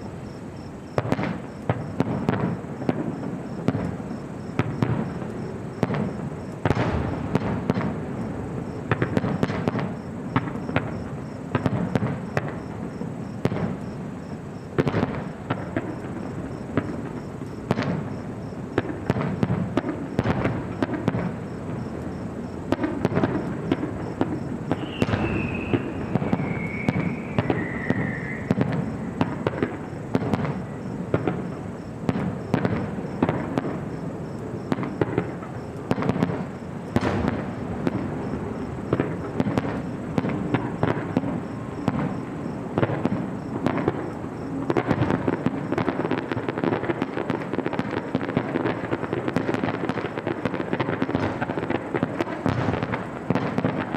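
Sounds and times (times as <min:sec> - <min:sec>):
fireworks bangs: 0:00.0 - 0:53.9
fireworks crackling: 0:00.0 - 0:53.9
falling whistling tone: 0:24.8 - 0:28.6.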